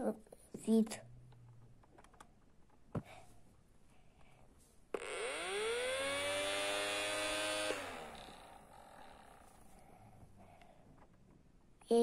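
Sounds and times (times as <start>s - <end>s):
toy motor whine: 5.0s - 9.7s.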